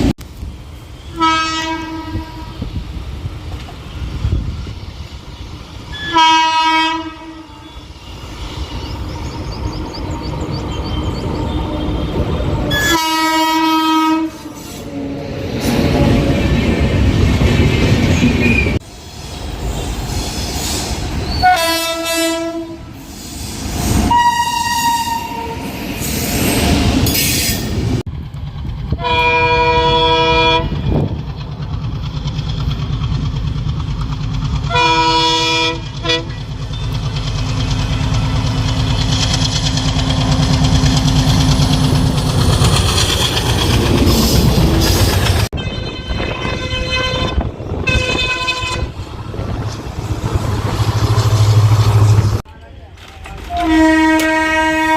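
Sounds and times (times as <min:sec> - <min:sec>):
locomotive horn chord: 0:01.1 - 0:02.6, 0:06.0 - 0:07.7, 0:12.7 - 0:14.6, 0:21.4 - 0:22.9, 0:29.0 - 0:30.7, 0:34.7 - 0:36.4, 0:45.5 - 0:48.9, 0:53.5 - 0:54.9
train wheel clatter: 0:27.0 - 0:45.6, 0:47.3 - 0:54.7.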